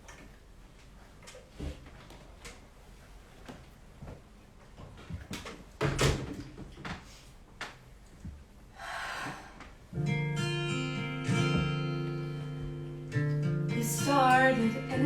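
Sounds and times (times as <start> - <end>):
small knocks and rustles: 0.0 - 8.6
guitar strumming a chord: 10.0 - 15.0.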